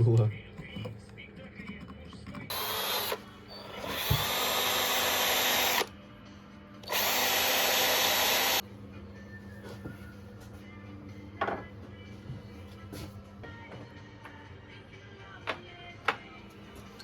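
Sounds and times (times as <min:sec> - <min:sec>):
handheld power tool running: 0:02.5 - 0:05.9, 0:06.8 - 0:08.6.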